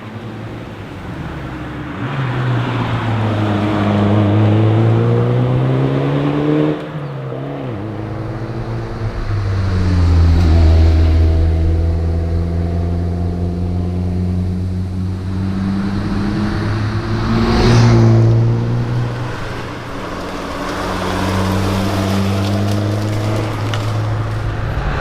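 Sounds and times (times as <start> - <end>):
rally car engine under load: 0.0 - 25.0
rush of noise: 7.6 - 25.0.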